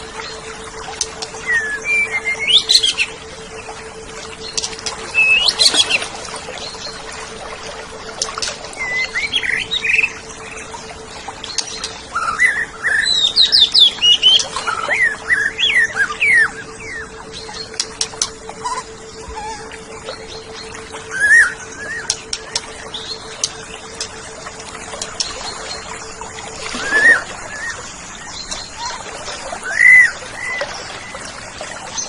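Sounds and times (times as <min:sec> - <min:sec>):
steady low hum: 0:00.0 - 0:32.0
bird singing whistled notes: 0:01.4 - 0:03.7, 0:04.4 - 0:07.0, 0:08.8 - 0:10.6, 0:11.5 - 0:24.1.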